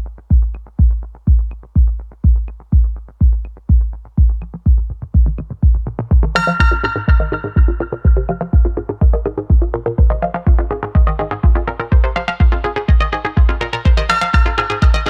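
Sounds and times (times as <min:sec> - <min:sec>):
deep kick drum: 0:00.0 - 0:15.0
bright synth chord: 0:06.4 - 0:09.2.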